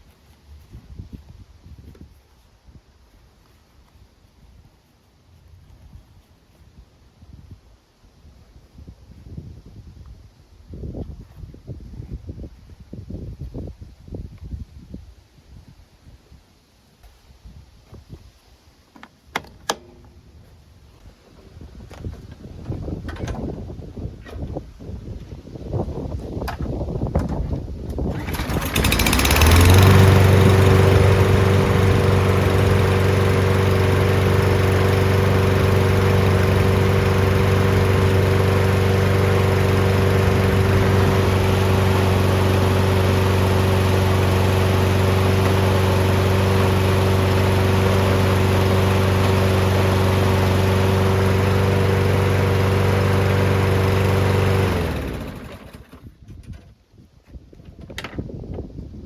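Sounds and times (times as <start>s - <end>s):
lawn mower engine running: 27.9s - 56.2s
engine spinning down: 28.1s - 56.1s.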